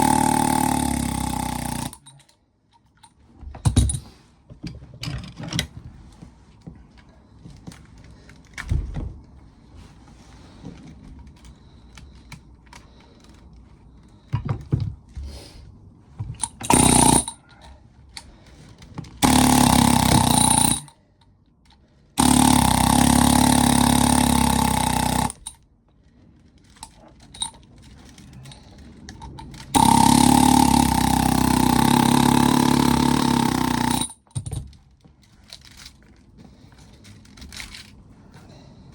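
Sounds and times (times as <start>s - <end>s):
pneumatic air hammer chiselling: 0.0s - 2.2s, 16.4s - 17.4s, 19.2s - 21.0s, 22.2s - 25.6s, 29.5s - 34.6s
metal parts clinking and knocking: 0.0s - 6.0s, 16.2s - 21.0s, 26.4s - 38.5s.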